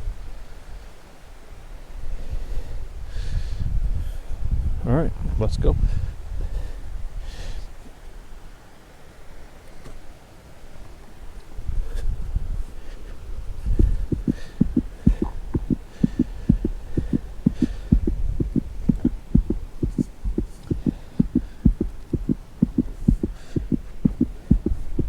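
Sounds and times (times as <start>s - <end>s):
footsteps thudding on trail: 13.8s - 25.0s.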